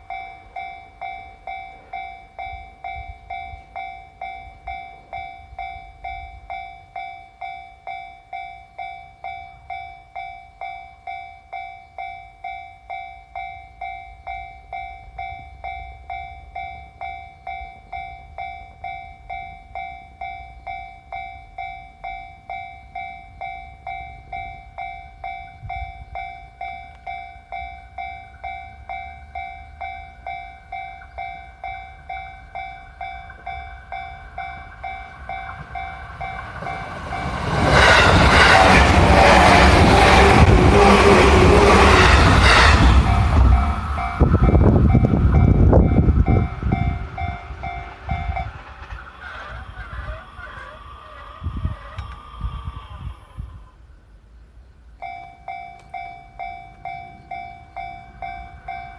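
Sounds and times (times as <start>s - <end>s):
level-crossing warning bell: 0.0s - 50.7s, 54.6s - 58.9s
train passing: 0.0s - 58.9s
low rumble: 34.7s - 53.9s.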